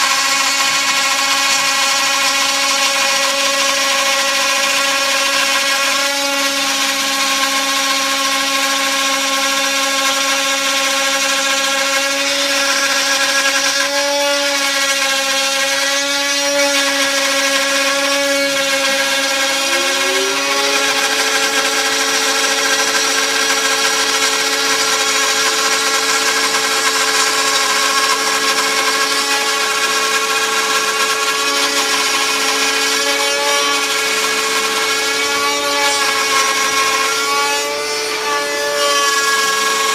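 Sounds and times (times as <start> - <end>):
cnc router motor whine: 0.0 - 39.9
router cutting wood: 0.0 - 39.9
rising tone: 18.2 - 21.9.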